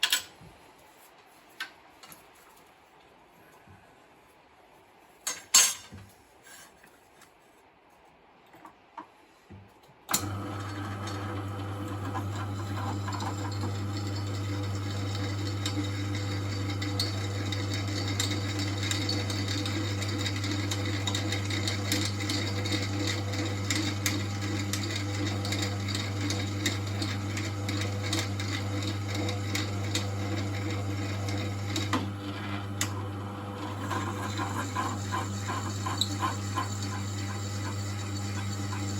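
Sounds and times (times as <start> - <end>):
electric drill running: 24.4 - 38.9.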